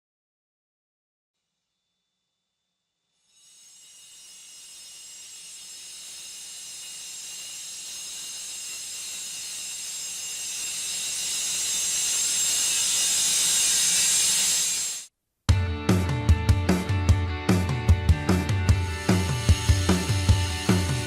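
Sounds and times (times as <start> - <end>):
vacuum cleaner motor running: 3.3 - 15.1, 18.7 - 21.0.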